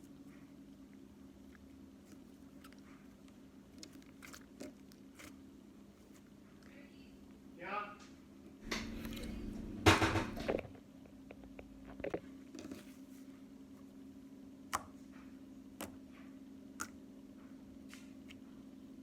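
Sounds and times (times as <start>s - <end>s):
steady low hum: 8.6s - 19.0s.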